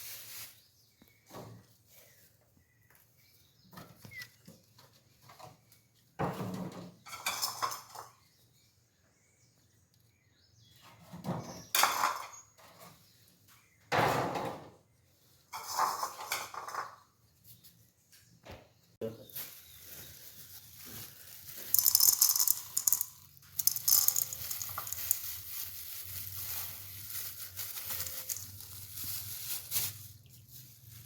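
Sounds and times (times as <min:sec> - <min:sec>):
cat food dishes clattering: 0:21.6 - 0:25.3.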